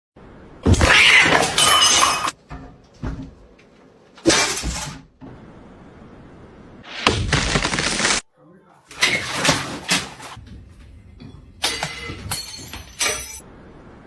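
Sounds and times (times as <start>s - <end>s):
glass breaking with crash: 0.6s - 2.7s, 4.2s - 5.0s, 8.9s - 10.4s, 11.2s - 13.5s.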